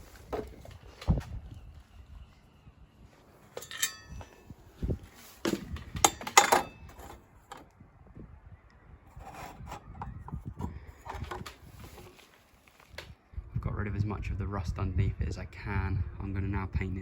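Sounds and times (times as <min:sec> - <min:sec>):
metal tools clinking and scraping: 0:03.4 - 0:04.5, 0:05.2 - 0:07.7
ringing metal clank: 0:03.6 - 0:04.4, 0:06.0 - 0:07.2.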